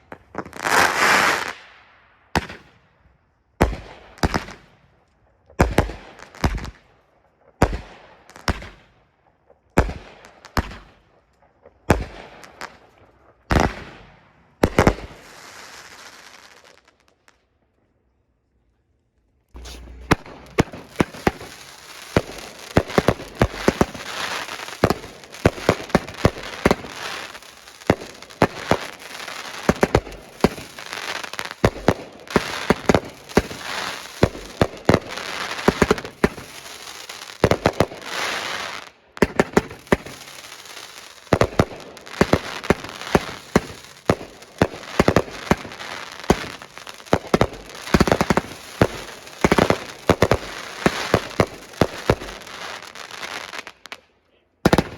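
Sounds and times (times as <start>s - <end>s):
fireworks bangs and pops: 0.0s - 1.7s, 2.3s - 2.8s, 3.6s - 4.8s, 5.4s - 17.4s, 19.5s - 54.9s
fireworks hiss and crackle: 0.0s - 1.8s, 11.9s - 17.4s, 19.5s - 54.0s.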